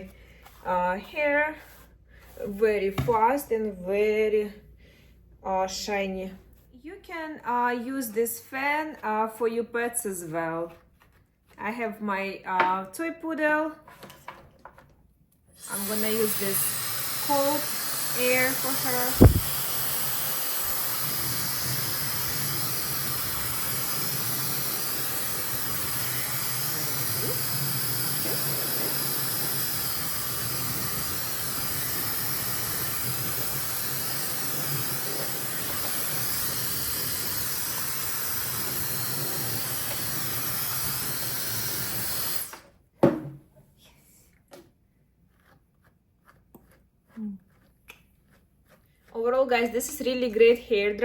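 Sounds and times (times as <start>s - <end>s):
hair dryer blowing air: 15.6s - 42.6s.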